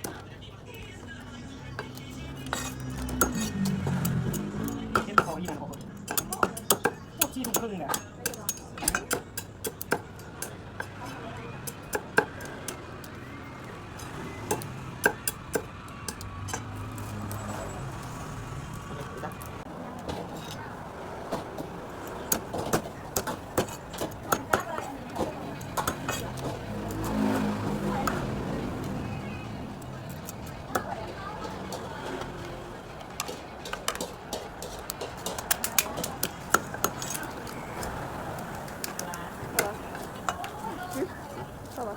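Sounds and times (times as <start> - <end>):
cleaver chopping crab shells: 1.8 - 13.2, 29.8 - 40.5.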